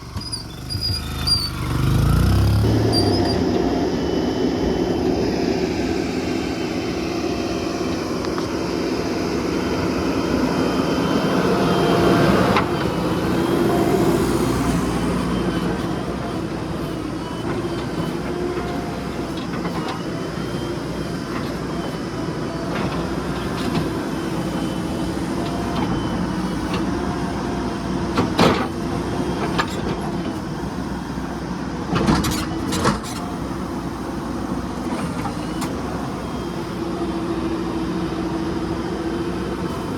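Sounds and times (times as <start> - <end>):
diesel machinery engine running: 0.0 - 39.9.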